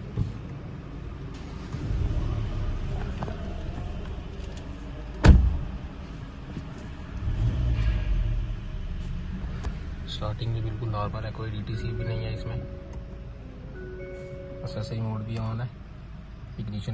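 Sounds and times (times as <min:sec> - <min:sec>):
car engine running: 0:00.0 - 0:16.9.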